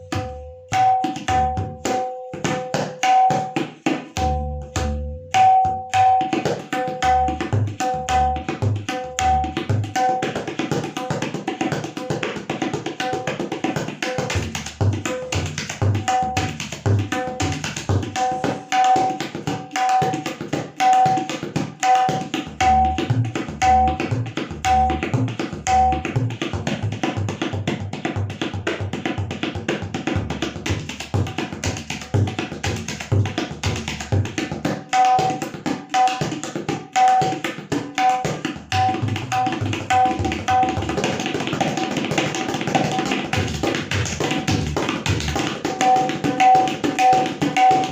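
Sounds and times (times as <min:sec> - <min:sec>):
tabla bass strokes: 0:00.0 - 0:02.0, 0:04.2 - 0:06.2, 0:07.0 - 0:10.1, 0:22.6 - 0:26.9
tabla ringing strokes: 0:00.0 - 0:47.9.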